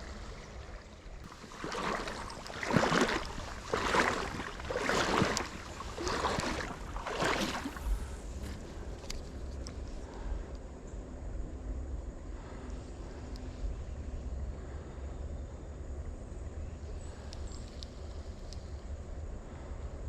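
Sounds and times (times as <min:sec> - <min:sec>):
footsteps splashing in shallow water: 0:00.0 - 0:09.6.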